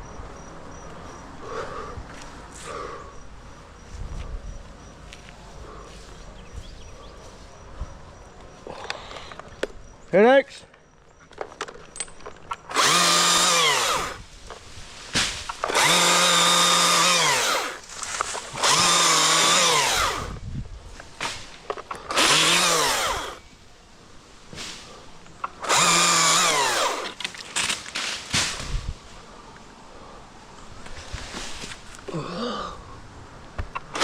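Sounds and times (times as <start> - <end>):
chainsaw revving and idling: 12.7 - 14.2, 15.6 - 20.4, 21.9 - 23.4, 25.5 - 27.2.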